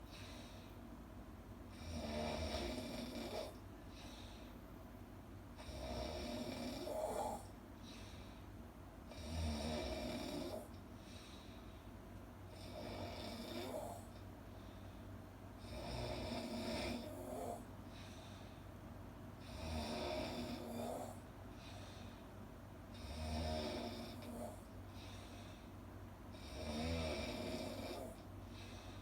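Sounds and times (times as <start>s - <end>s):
loud snoring: 1.7s - 3.6s, 5.6s - 7.5s, 9.1s - 10.7s, 12.6s - 14.1s, 15.6s - 17.7s, 19.4s - 21.2s, 23.0s - 24.7s, 26.4s - 28.2s.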